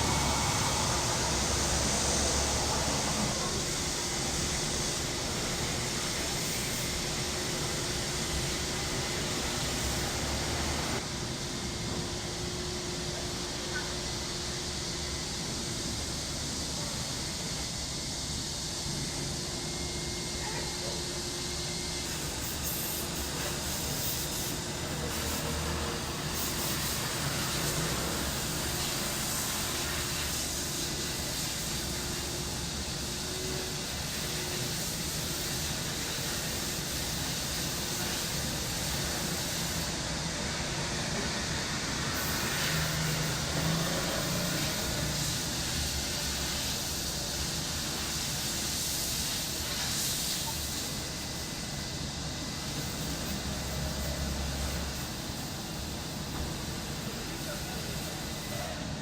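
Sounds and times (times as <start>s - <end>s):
distant traffic hum: 0.0s - 14.6s
cicadas buzzing: 0.0s - 59.0s.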